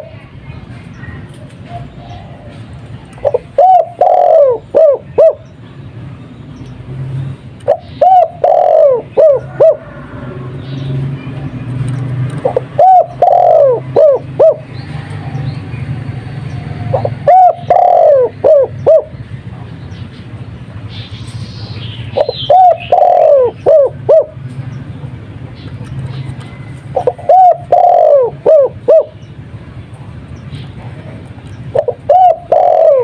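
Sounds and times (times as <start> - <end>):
dove cooing: 1.7 - 5.5, 7.6 - 10.5, 12.4 - 15.0, 16.6 - 19.3, 22.1 - 24.4, 26.5 - 29.2, 31.7 - 33.0.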